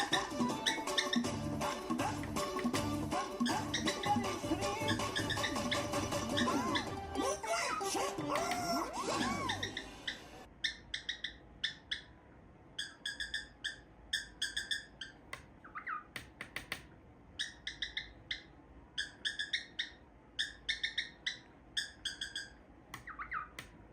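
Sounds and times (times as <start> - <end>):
cockatiel chirping: 0.0 - 12.2, 12.8 - 16.7, 17.4 - 23.7
sharp clicks: 16.1 - 16.9.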